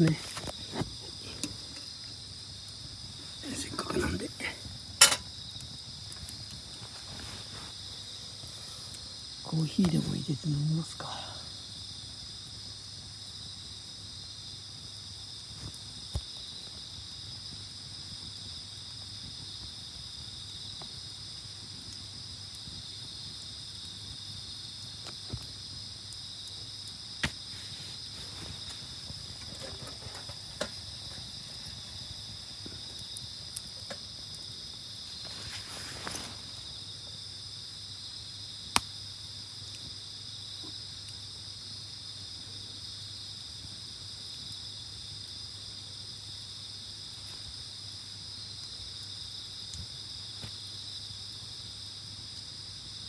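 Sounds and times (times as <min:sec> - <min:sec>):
campfire popping: 0:00.0 - 0:12.6, 0:15.5 - 0:37.1
crickets and insects chirping: 0:00.0 - 0:53.0
rustle: 0:06.0 - 0:11.3, 0:20.4 - 0:37.4.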